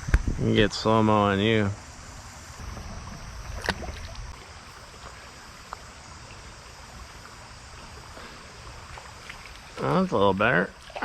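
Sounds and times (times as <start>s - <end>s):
creek water flowing: 2.6s - 11.0s.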